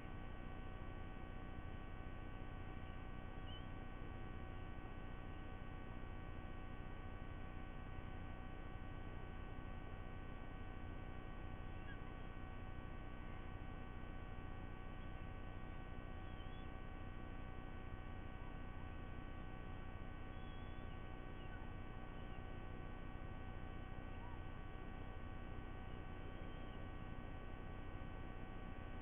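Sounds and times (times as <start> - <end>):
electrical hum and hiss: 0.0 - 29.0
distant birds chirping: 14.8 - 17.1, 19.4 - 28.1.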